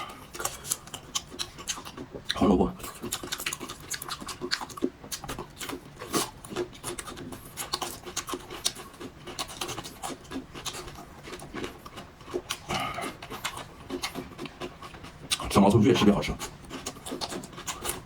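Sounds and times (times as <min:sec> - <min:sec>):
chewing: 0:00.0 - 0:18.0.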